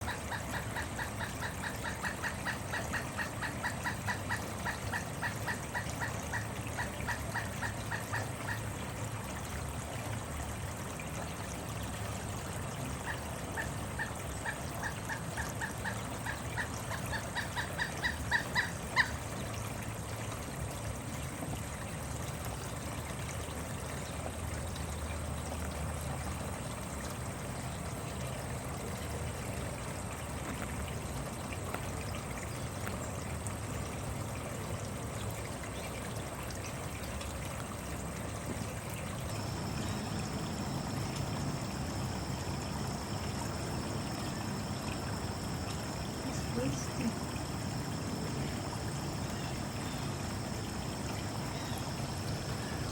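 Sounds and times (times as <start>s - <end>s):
steady background hiss: 0.1s - 52.9s
woodpecker calling: 13.1s - 19.2s.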